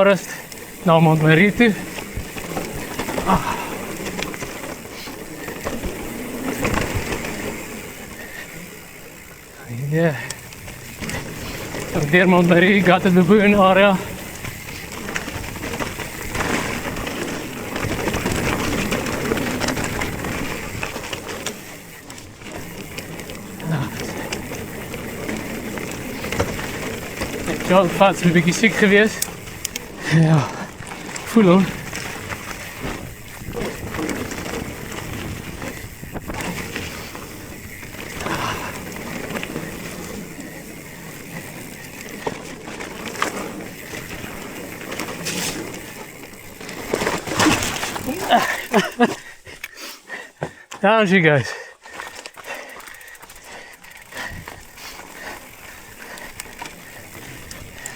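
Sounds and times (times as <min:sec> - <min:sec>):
bike rattling and clicking: 0:00.0 - 0:57.9
bike tyres rolling on dirt: 0:00.0 - 0:57.9.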